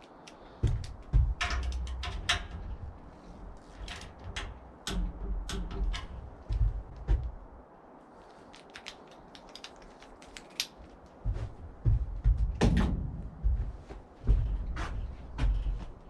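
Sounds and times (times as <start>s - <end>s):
heavy wooden thuds: 0.6s - 7.6s, 11.2s - 16.0s.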